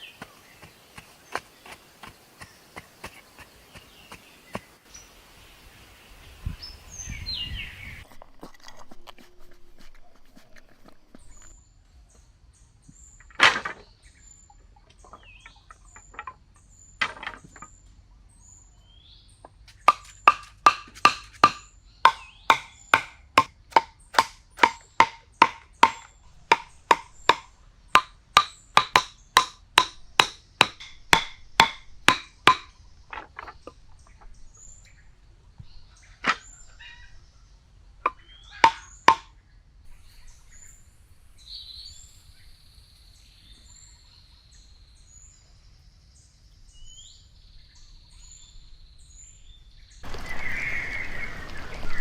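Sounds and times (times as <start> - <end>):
sharp ringing knocks: 19.9 - 33.4, 38.1 - 39.3.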